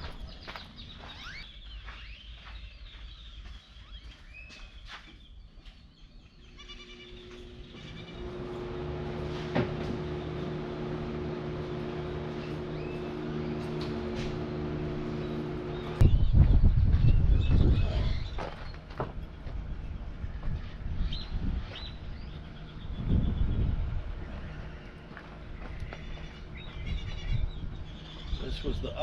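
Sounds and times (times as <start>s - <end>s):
birds chirping: 0.0s - 29.0s
steady droning hum: 6.4s - 16.0s, 19.2s - 29.0s.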